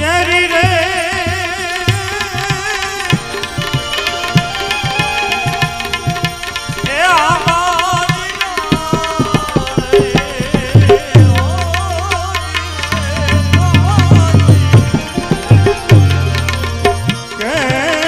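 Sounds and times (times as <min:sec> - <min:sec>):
tabla playing: 0:00.0 - 0:18.0
wavering melody line: 0:02.8 - 0:07.9, 0:11.0 - 0:17.9.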